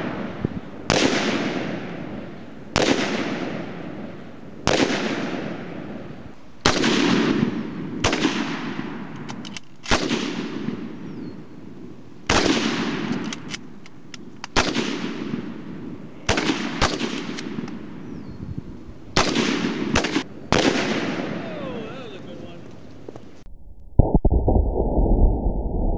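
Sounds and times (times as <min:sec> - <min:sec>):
rifle shots echoing: 0:00.0 - 0:04.0, 0:04.6 - 0:06.0, 0:06.6 - 0:11.0, 0:12.3 - 0:13.7, 0:14.5 - 0:18.0, 0:19.2 - 0:22.3.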